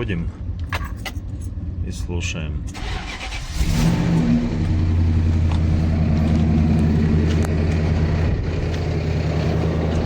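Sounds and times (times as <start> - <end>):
car engine starting and idling: 2.7 - 10.0.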